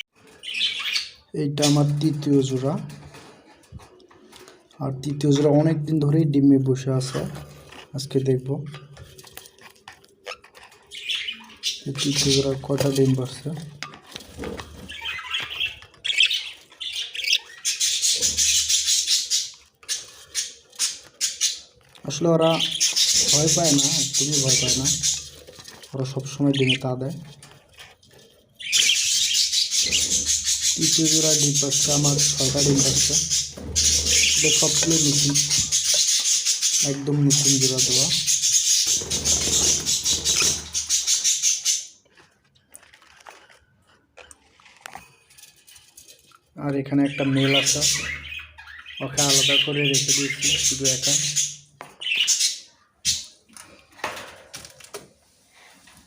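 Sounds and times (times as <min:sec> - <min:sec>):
budgerigars chattering and squawking: 0:00.0 - 0:03.3, 0:06.8 - 0:13.7, 0:14.3 - 0:42.0, 0:46.6 - 0:53.4
loud scratchy rattling noise: 0:38.8 - 0:41.1.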